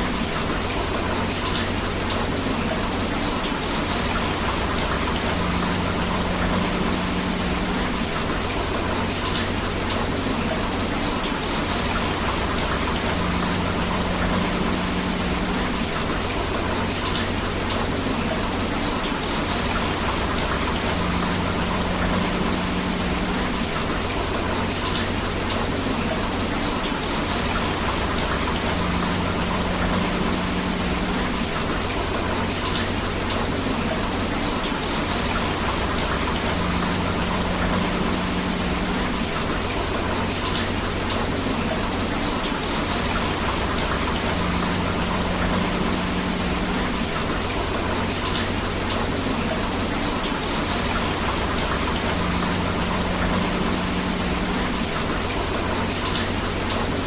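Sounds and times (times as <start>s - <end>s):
rushing river: 0.0s - 57.0s
steady rain: 0.0s - 57.0s.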